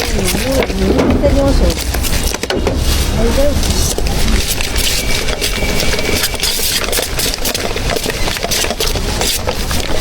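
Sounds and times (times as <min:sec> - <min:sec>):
irregular clicks and clatter: 0:03.8 - 0:10.0.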